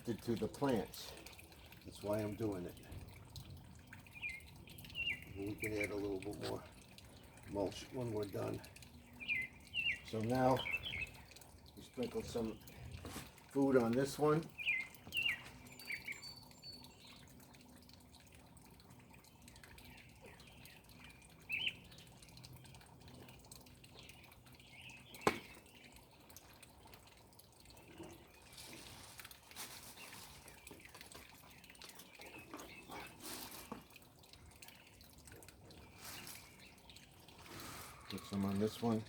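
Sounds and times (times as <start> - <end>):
water dripping: 0.0 - 39.0
bird chirp: 3.8 - 6.3, 8.8 - 11.4, 14.5 - 17.4, 19.4 - 22.8, 29.8 - 34.0
soft rustling hiss: 28.4 - 31.3.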